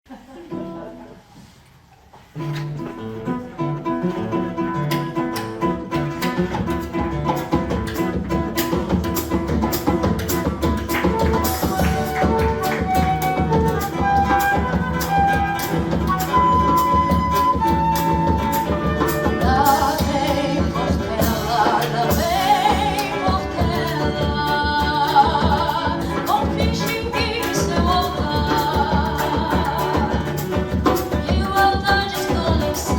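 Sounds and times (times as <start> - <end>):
acoustic guitar: 0.1 - 32.9
hand percussion: 4.9 - 32.9
flute melody: 10.9 - 20.6.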